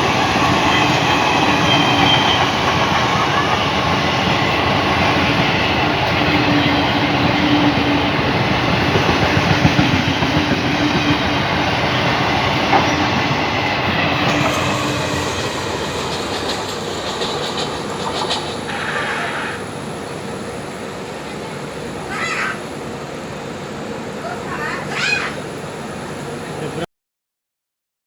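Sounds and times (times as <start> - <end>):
wheels clacking over rail joints: 0.0 - 20.2
train coaches rushing past: 0.0 - 26.8.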